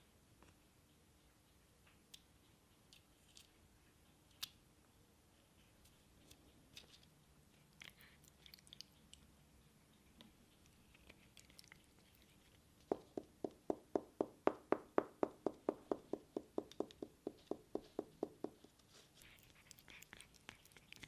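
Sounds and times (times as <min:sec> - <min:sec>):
faint crackly clicks: 0:00.4 - 0:04.6, 0:05.8 - 0:12.9
evenly spaced taps: 0:12.9 - 0:18.8.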